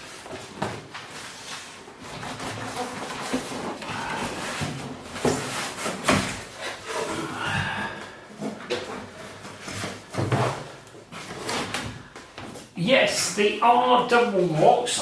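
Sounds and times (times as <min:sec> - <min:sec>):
cardboard scraping and rustling: 0:00.0 - 0:07.3, 0:08.4 - 0:12.7.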